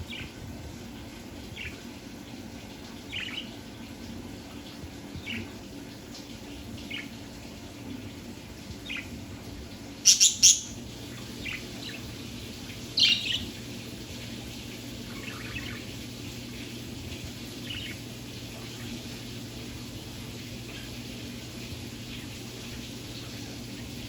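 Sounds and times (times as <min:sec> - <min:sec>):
low steady hum: 0:00.0 - 0:24.0
budgerigar chirping: 0:10.1 - 0:10.7.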